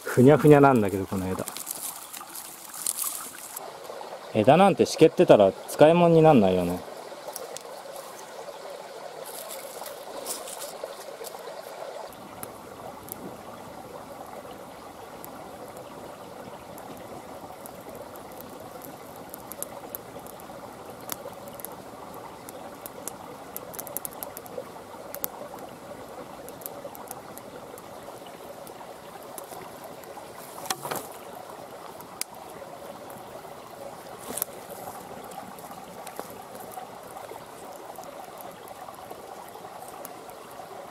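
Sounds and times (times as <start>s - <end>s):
river water flowing: 0.0s - 40.9s.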